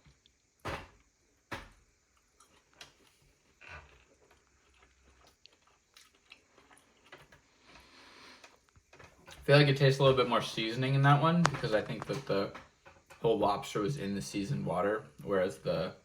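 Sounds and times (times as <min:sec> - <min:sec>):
chewing with sharp clicks: 0:02.2 - 0:08.9.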